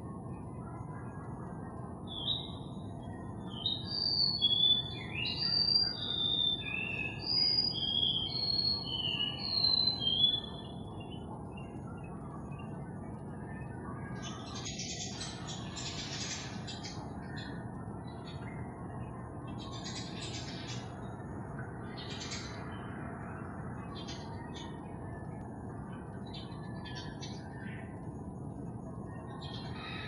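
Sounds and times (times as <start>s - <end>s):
songbird whistling notes: 3.5s - 10.7s.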